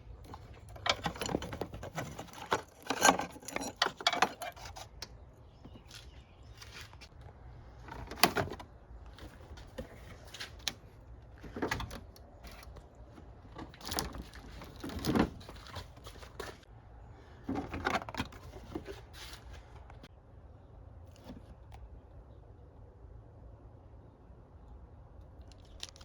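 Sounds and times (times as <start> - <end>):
hand tools and metal parts clicking: 0.1 - 5.2.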